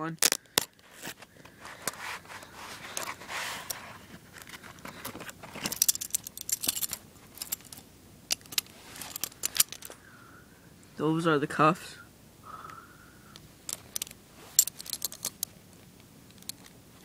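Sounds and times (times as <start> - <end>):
soft rustling: 0.2 - 7.8, 8.4 - 10.0, 13.7 - 15.4
handcuffs clinking and rattling: 2.7 - 10.0, 13.6 - 15.6, 16.3 - 16.7
handcuffs clicking: 5.7 - 10.0, 13.7 - 15.5, 16.3 - 16.7.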